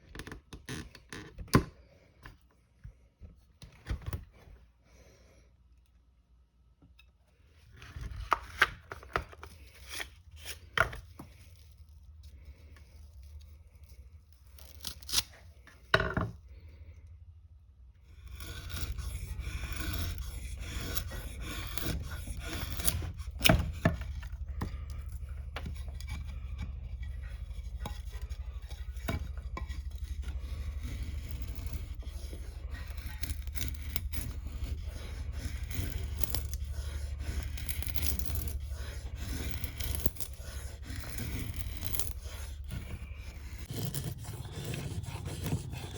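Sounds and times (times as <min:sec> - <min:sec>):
knife cutting and scraping wood: 0:07.7 - 0:16.3, 0:18.0 - 0:45.9
steady low rumble: 0:16.5 - 0:45.9.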